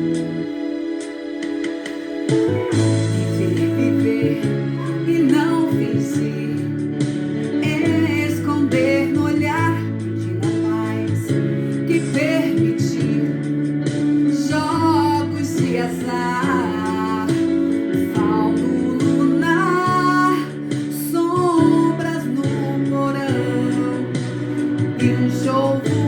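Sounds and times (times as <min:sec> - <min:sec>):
strummed and plucked guitar: 0:00.0 - 0:26.0
woman singing: 0:02.5 - 0:26.0.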